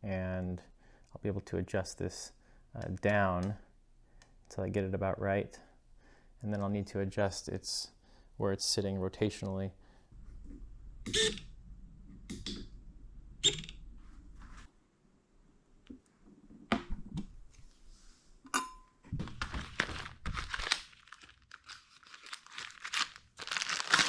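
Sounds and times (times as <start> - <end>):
crinkling plastic rustle: 19.2 - 24.0.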